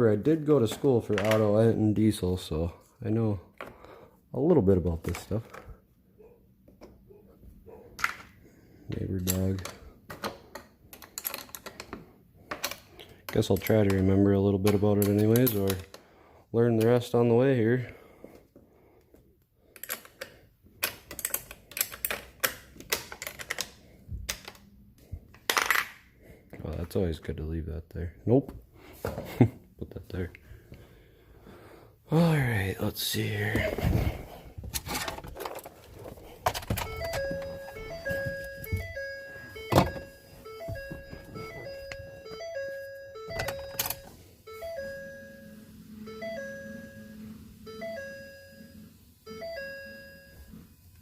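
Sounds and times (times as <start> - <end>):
simple electronic tune: 36.8 - 50.5.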